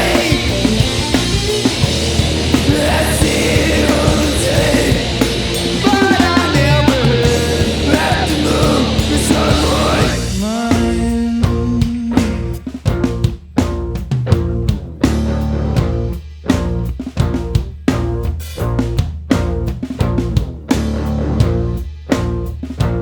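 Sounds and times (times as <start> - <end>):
heavy rock band playing: 0.0 - 23.0.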